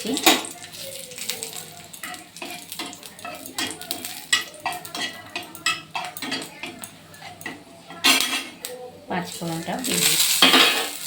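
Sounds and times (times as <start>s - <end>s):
chillies sizzling in oil: 0.0s - 11.0s.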